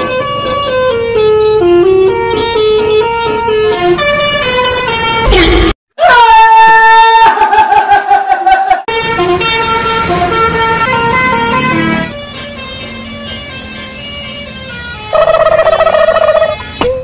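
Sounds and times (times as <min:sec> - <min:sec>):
musical bus horn notes: 0:00.0 - 0:05.5, 0:08.9 - 0:17.0.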